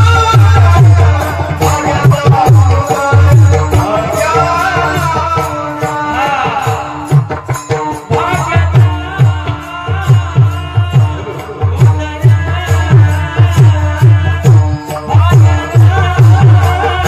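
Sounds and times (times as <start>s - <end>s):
deep hand drum rhythm: 0.0s - 17.0s.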